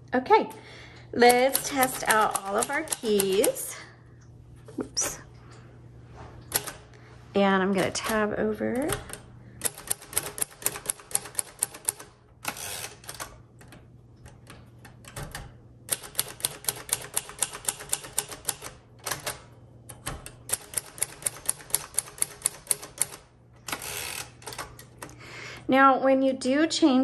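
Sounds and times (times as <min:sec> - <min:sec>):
typewriter keys striking: 0:01.2 - 0:03.6, 0:06.5 - 0:06.8, 0:08.8 - 0:13.3, 0:14.3 - 0:25.2.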